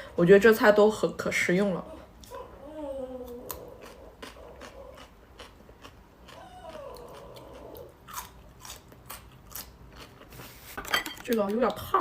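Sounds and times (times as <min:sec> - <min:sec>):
close-up chewing with crunching: 0:03.2 - 0:10.6.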